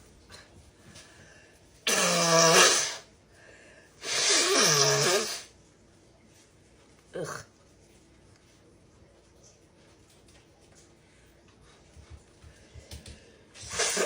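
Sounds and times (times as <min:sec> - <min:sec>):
person blowing nose: 0:01.8 - 0:03.1, 0:04.0 - 0:05.5, 0:13.6 - 0:14.0.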